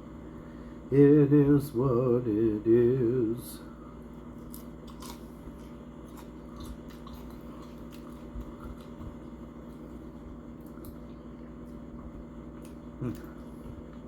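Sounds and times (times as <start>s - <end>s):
low hum: 0.0s - 14.0s
chewing crunches: 4.3s - 14.0s.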